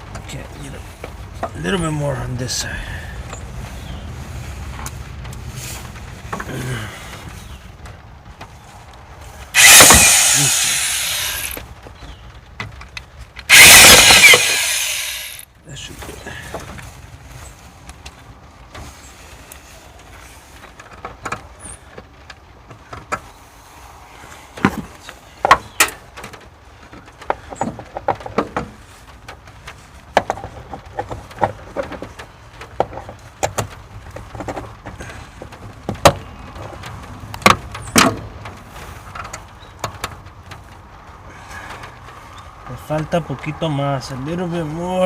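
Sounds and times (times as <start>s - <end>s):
hand tools clicking and knocking: 9.6s - 11.6s, 13.4s - 15.4s.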